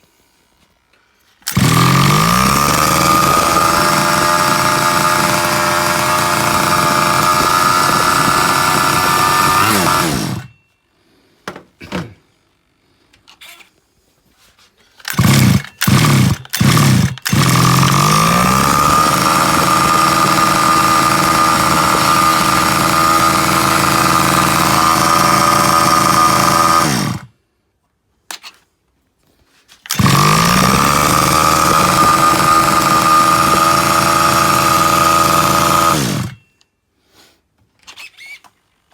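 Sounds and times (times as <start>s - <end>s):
small engine running: 1.4s - 10.5s, 15.0s - 27.3s, 29.8s - 36.4s.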